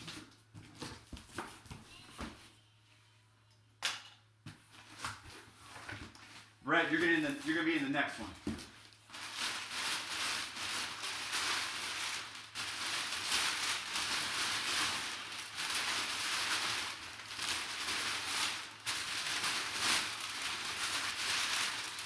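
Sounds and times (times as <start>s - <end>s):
packing material rustling: 4.7s - 22.0s.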